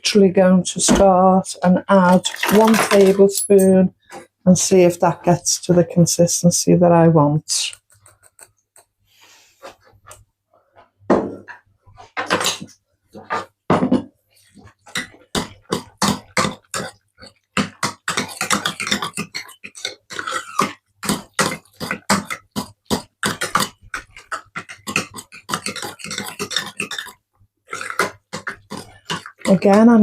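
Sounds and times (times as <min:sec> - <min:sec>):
potato masher pounding wet food: 0:14.6 - 0:30.0.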